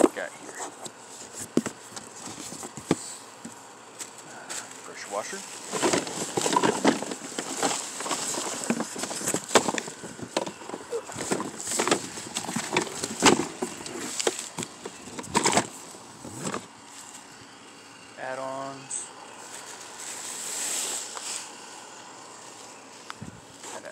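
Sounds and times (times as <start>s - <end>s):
cardboard and plastic rustling: 0.0s - 17.3s, 19.4s - 21.7s
knocks and thumps: 5.7s - 15.7s.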